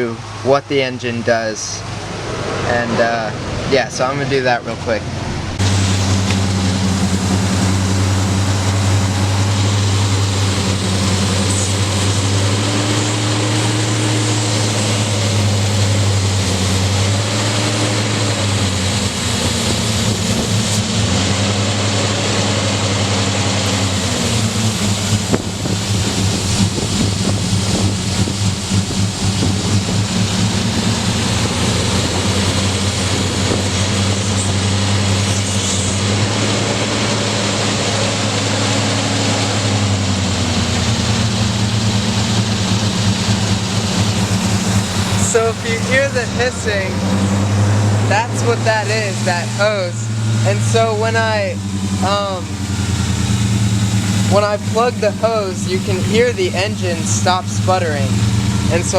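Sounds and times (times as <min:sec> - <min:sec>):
engine idling roughly: 0:00.0 - 0:58.9
faint whine: 0:40.4 - 0:58.9.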